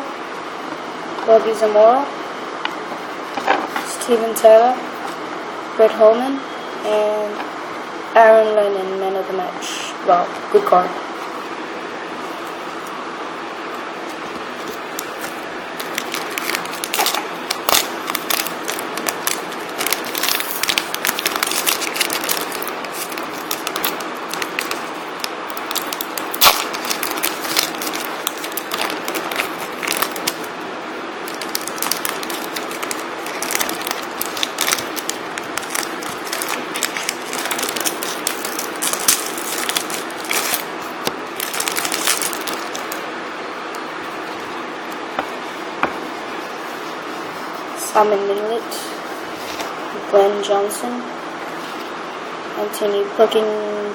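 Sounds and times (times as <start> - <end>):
cards being handled: 14.6 - 30.5, 31.3 - 43.0
foil packet crinkling and tearing: 14.6 - 30.6, 31.2 - 43.0.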